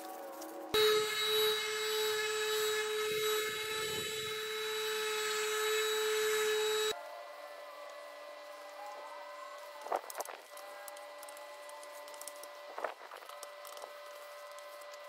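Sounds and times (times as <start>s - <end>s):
power tool whining: 0.8s - 7.0s.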